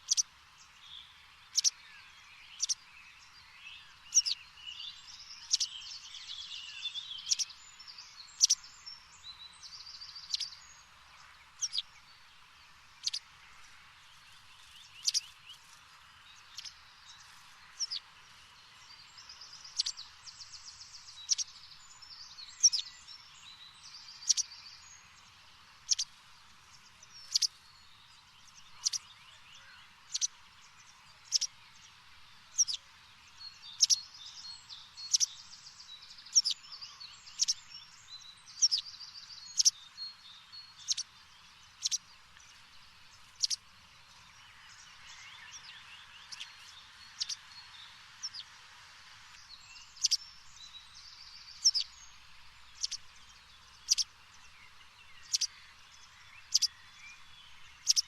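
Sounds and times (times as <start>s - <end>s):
birds twittering: 0.0s - 48.6s, 49.3s - 58.0s
bird sharp high chirp: 8.4s - 8.7s, 43.4s - 43.6s, 49.8s - 50.4s, 51.5s - 52.0s, 55.2s - 55.6s.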